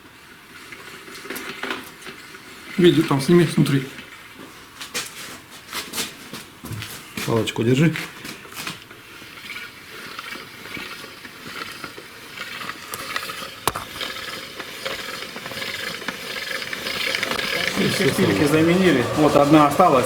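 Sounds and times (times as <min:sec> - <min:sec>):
meshing gears rattling: 0:12.8 - 0:15.2.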